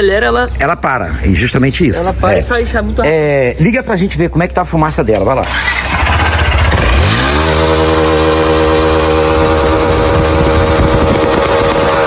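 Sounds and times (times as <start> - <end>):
motorcycle engine revving: 5.1 - 12.0.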